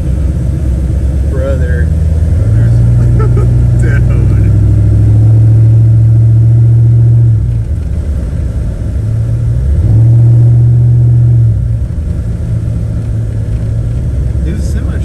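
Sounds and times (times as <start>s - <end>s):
truck cab low drone: 0.0s - 15.0s.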